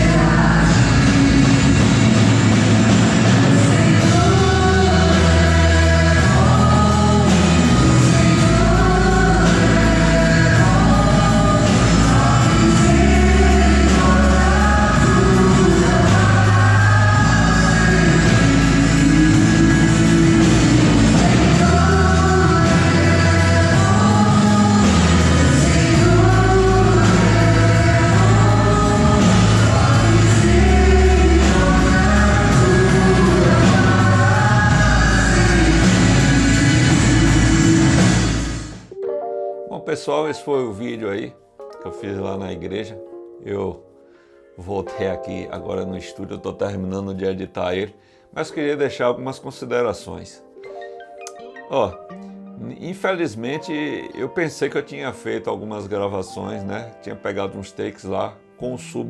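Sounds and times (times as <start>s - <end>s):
band with heavy bass: 0.0s - 38.9s
gospel singing: 0.0s - 39.1s.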